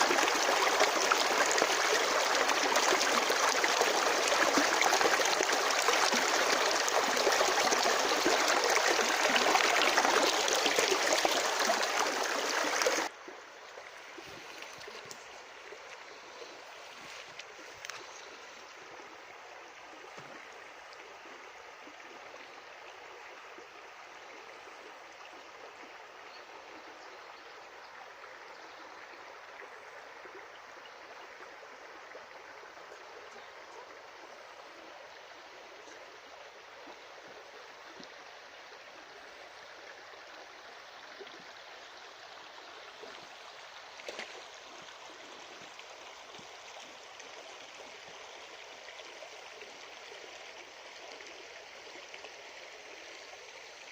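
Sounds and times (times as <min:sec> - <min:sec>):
water running over stones: 0:00.0 - 0:13.1, 0:38.9 - 0:51.2.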